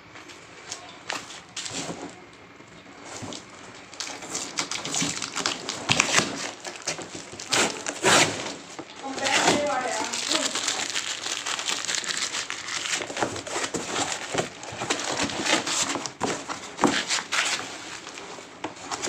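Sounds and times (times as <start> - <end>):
cardboard and plastic rustling: 0.0 - 19.0.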